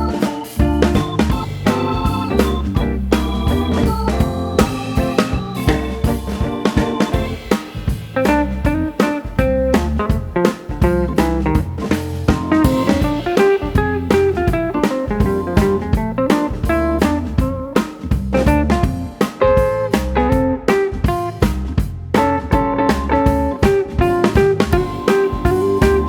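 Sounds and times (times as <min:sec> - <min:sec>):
drum kit steady beat: 0:00.0 - 0:26.0
plucked guitar melody: 0:08.2 - 0:21.4, 0:22.2 - 0:26.0.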